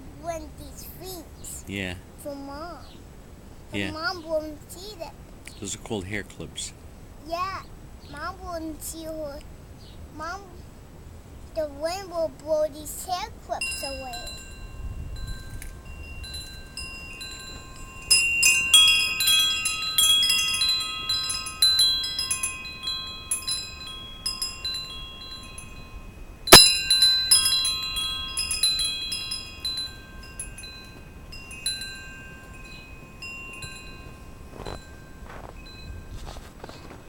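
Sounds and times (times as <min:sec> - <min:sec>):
wind chimes ringing: 0:13.6 - 0:37.0
gusty wind: 0:14.0 - 0:37.0.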